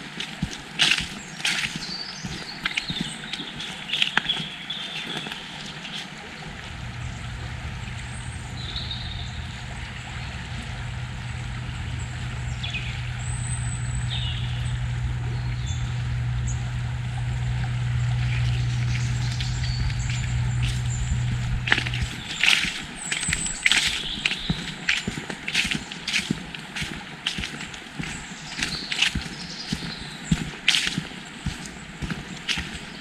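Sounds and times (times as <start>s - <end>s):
low engine hum: 0.1s - 33.0s
bird chirps: 11.8s - 16.8s, 17.8s - 25.8s.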